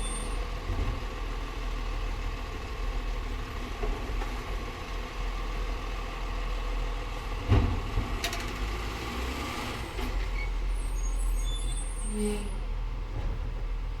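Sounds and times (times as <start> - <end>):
garbage truck engine rumbling: 0.0 - 14.0.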